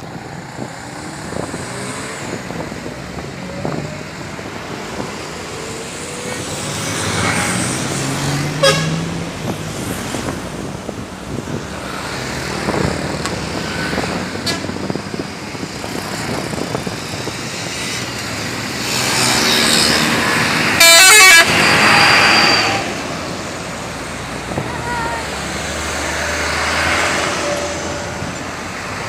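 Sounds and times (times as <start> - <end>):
bus passing: 0.0 - 29.0
road traffic: 0.0 - 29.0
multi-tone musical bus horn: 8.5 - 9.2, 20.6 - 22.9.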